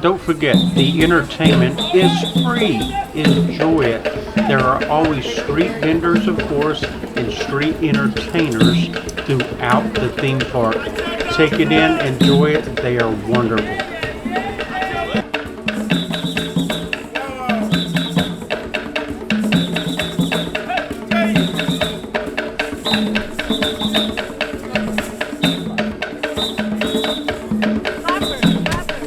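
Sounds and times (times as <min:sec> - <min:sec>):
dense clicking percussion: 0:00.0 - 0:16.8
drums: 0:00.0 - 0:29.0.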